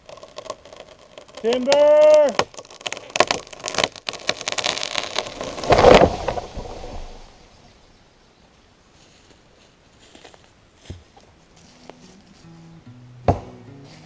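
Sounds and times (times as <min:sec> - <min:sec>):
wood and branches cracking: 0:00.0 - 0:07.6
tree crashing to ground: 0:00.0 - 0:07.7
branches rustling: 0:00.0 - 0:14.0.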